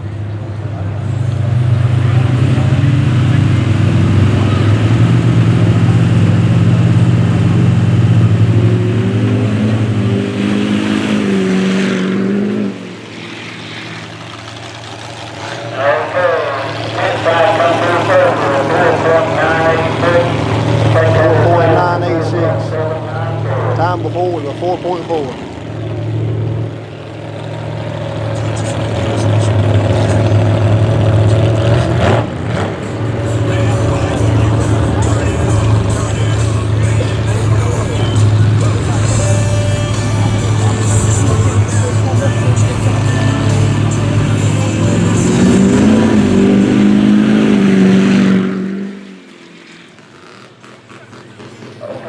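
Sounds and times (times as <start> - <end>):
truck engine revving: 0.0 - 52.0.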